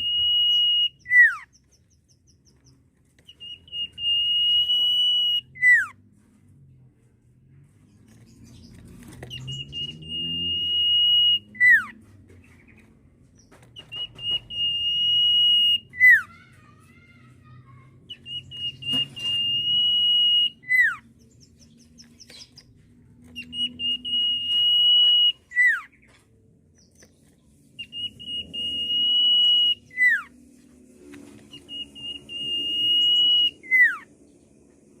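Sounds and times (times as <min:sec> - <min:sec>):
bird whistling its song: 0:00.0 - 0:06.0, 0:08.3 - 0:12.0, 0:13.4 - 0:16.3, 0:18.1 - 0:22.7, 0:23.3 - 0:26.1, 0:26.8 - 0:30.5, 0:31.1 - 0:34.1.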